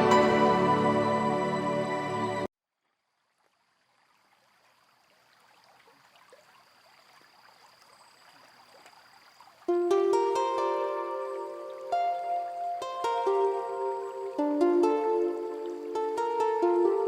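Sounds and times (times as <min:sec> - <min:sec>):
background music: 0:00.0 - 0:02.5, 0:09.7 - 0:17.0
plucked-string music: 0:00.0 - 0:02.5, 0:09.7 - 0:17.0
thin high tone: 0:00.0 - 0:02.5
faint hiss: 0:04.2 - 0:17.0.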